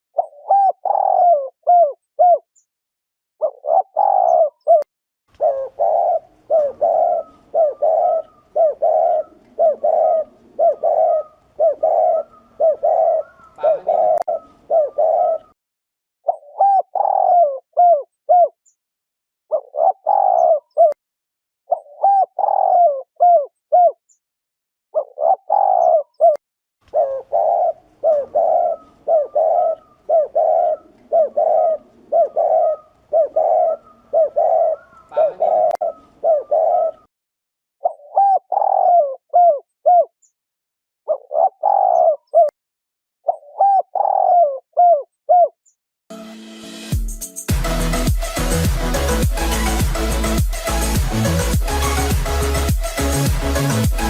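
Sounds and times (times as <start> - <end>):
dove cooing: 0.2 - 2.5, 3.4 - 15.6, 16.3 - 18.6, 19.5 - 21.0, 21.7 - 24.0, 25.0 - 37.1, 37.8 - 40.1, 41.1 - 42.6, 43.3 - 45.6.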